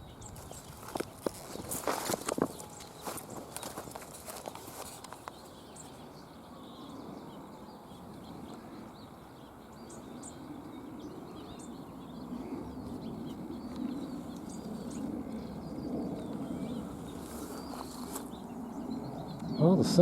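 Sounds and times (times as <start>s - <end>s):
bird chirps: 0.0s - 20.0s.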